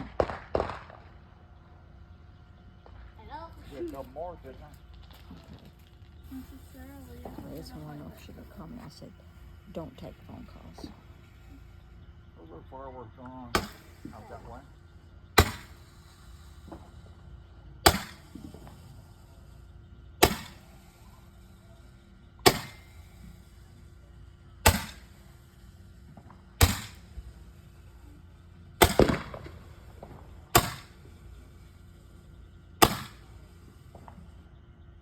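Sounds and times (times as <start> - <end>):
roman candle firing pops: 0.0 - 1.2, 13.5 - 14.6, 15.4 - 16.1, 17.8 - 18.9, 20.2 - 20.9, 22.4 - 23.2, 24.6 - 25.3, 26.2 - 27.1, 28.8 - 31.2, 32.8 - 34.3.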